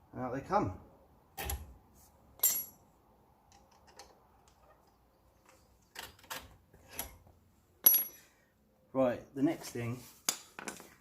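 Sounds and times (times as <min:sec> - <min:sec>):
metal parts clinking and knocking: 0:02.4 - 0:02.8, 0:07.8 - 0:08.3.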